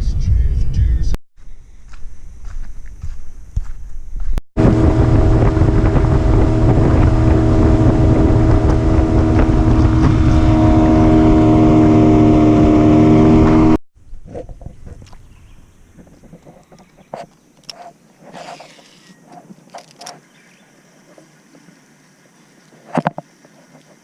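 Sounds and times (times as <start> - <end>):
wind on microphone: 2.1 - 16.6
outboard motor running: 4.6 - 13.8.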